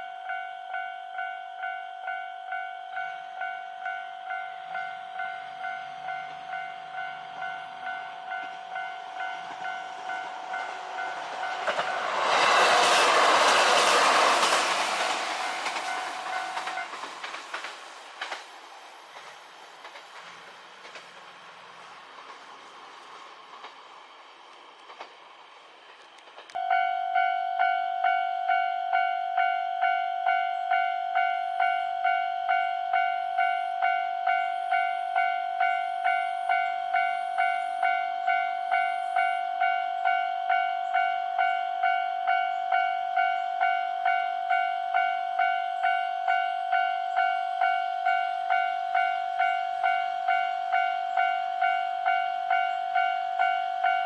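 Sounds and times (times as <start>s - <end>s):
train running noise: 2.5s - 54.0s
electronic level crossing bell: 26.6s - 54.0s.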